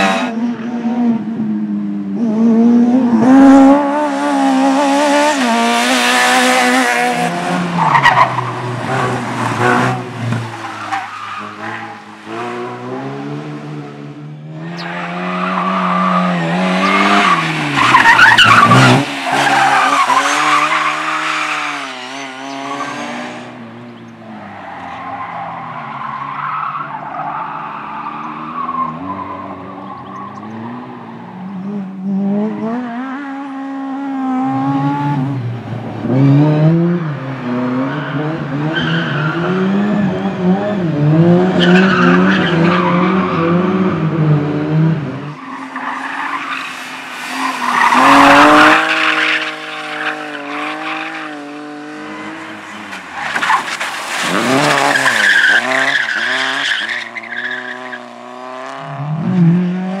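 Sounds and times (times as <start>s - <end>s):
car engines revving: 0.0s - 60.0s
tyres squealing and skidding: 7.7s - 12.7s, 14.5s - 23.4s, 24.3s - 31.5s, 37.8s - 40.3s, 41.6s - 44.1s, 45.3s - 58.2s.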